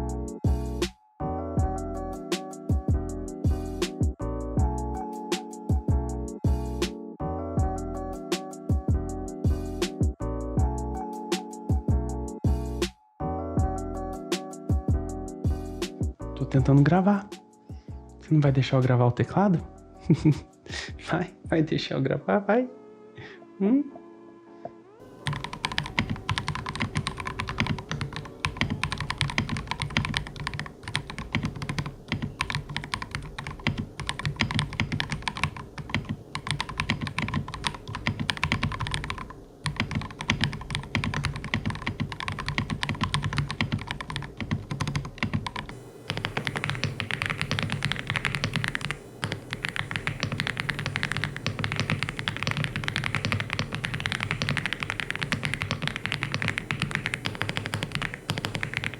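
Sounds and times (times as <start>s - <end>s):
fast typing on mechanical keyboard: 25.2s - 58.9s.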